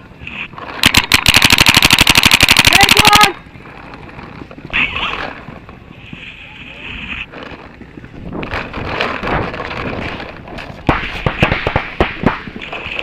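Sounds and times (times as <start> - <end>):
paintball marker rapid firing: 0.8 - 3.3, 10.8 - 12.7.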